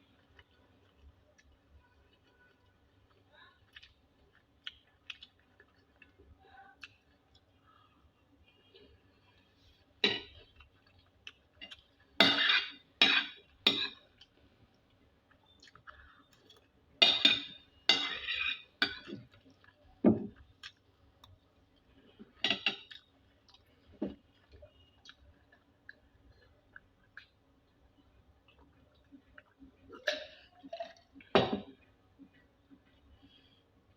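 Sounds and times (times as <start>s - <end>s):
cutlery clinking on a dish: 10.0s - 10.4s, 12.2s - 14.0s, 17.0s - 19.3s, 22.4s - 22.9s.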